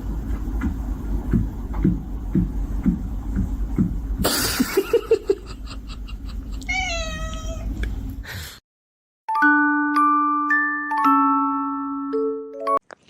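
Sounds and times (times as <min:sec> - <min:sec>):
cat meowing: 0:06.6 - 0:07.8
chiming mallet notes: 0:09.3 - 0:12.8.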